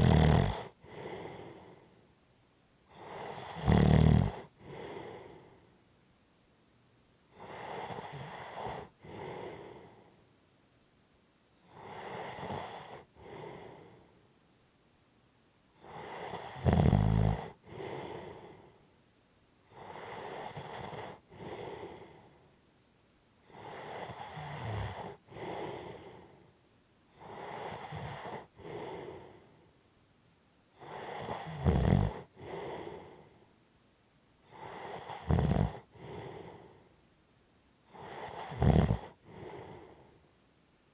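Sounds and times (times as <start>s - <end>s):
loud rattling snore: 0.0s - 0.7s, 3.0s - 4.5s, 15.8s - 17.6s, 23.5s - 25.2s, 30.8s - 32.3s, 34.6s - 36.3s, 37.9s - 39.2s
person snoring and breathing: 0.0s - 2.0s, 2.9s - 5.7s, 7.3s - 10.2s, 11.7s - 14.1s, 15.8s - 18.8s, 19.7s - 22.4s, 23.4s - 26.4s, 27.2s - 29.6s, 30.8s - 33.4s, 34.4s - 36.9s, 37.9s - 40.2s.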